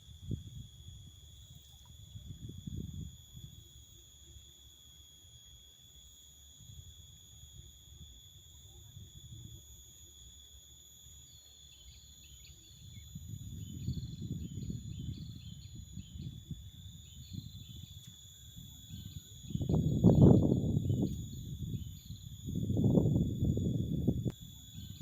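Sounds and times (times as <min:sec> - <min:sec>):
high-pitched insect drone: 0:00.0 - 0:25.0
bird chirping: 0:11.2 - 0:18.2.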